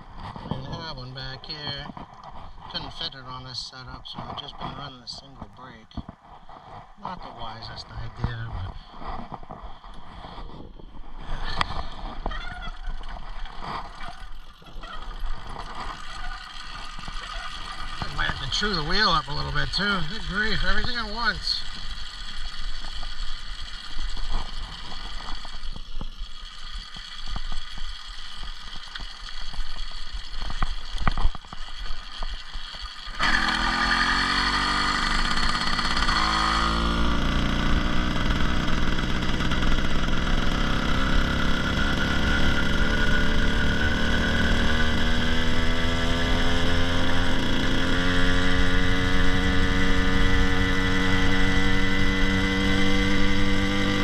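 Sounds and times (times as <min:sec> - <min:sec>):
two-stroke engine running: 0:11.1 - 0:54.0.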